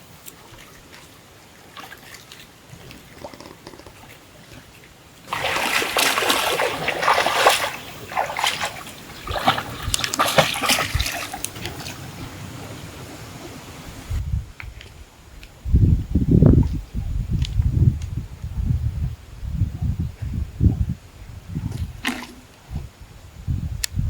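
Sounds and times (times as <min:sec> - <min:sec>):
water splashing hard: 0:05.2 - 0:14.2, 0:21.7 - 0:22.5.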